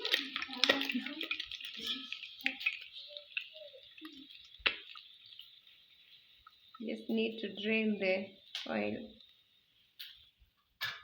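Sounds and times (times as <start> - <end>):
utensil clicking against pan: 0.0 - 5.5
fish sizzling in hot oil: 0.0 - 11.0.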